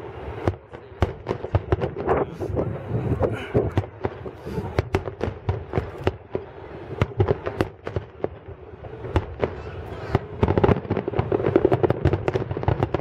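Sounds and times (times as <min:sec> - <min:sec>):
fireworks bursting: 0:00.0 - 0:13.0.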